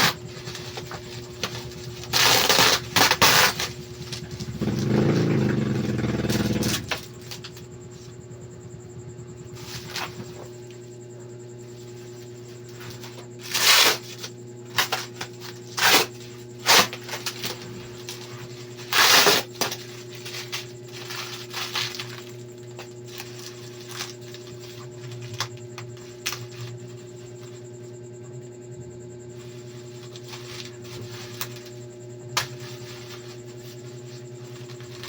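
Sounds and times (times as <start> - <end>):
packaging scraping and crackling: 0.0 - 7.6, 12.9 - 26.8, 32.4 - 35.0
steady low hum: 0.0 - 35.0.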